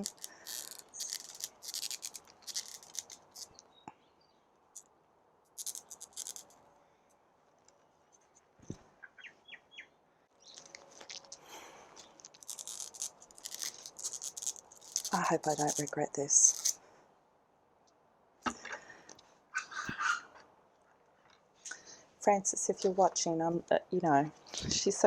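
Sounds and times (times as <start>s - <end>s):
hands rustling plant: 0.0s - 3.6s, 10.4s - 16.8s
bird chirps: 9.0s - 10.8s.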